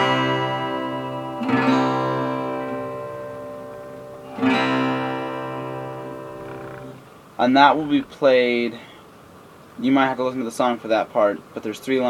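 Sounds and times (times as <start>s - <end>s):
guitar chord ringing: 0.0s - 8.8s.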